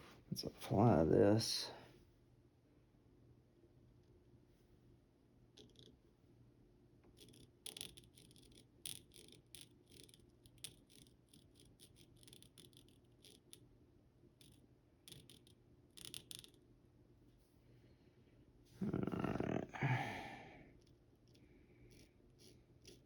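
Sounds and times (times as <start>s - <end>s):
small objects clicking: 7.1s - 13.6s, 14.4s - 16.6s.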